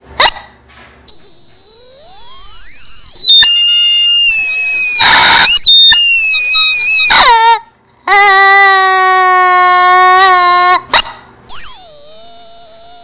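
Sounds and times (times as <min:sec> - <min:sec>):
distorted chicken squealing: 0:01.4 - 0:09.2.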